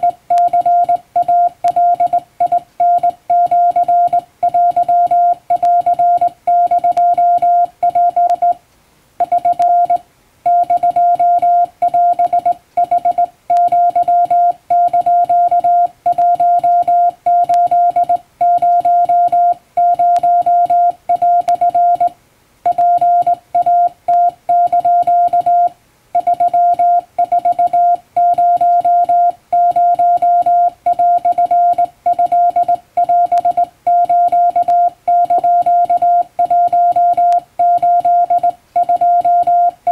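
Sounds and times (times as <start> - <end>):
morse code beeps: 0.0 - 8.6, 9.2 - 39.9.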